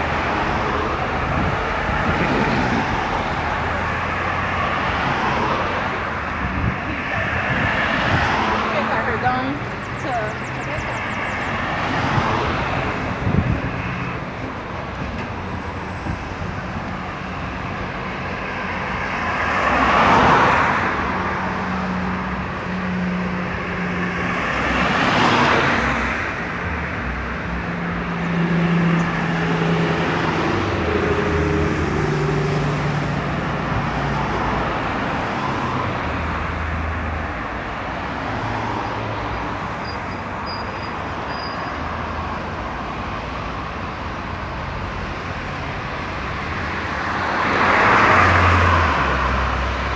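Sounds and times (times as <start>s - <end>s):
highway traffic noise: 0.0s - 49.9s
loud vehicle passing: 27.4s - 39.8s, 45.3s - 49.9s.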